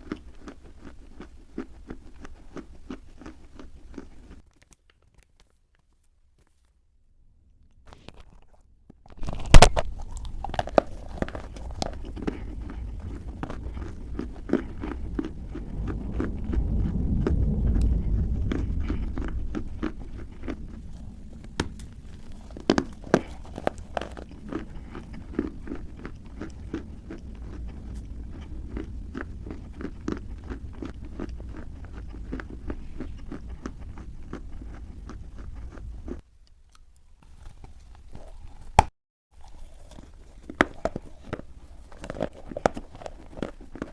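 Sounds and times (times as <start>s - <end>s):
dry clay crunching when chewed: 0.0s - 6.8s, 7.7s - 43.9s
low rumble: 9.3s - 36.2s.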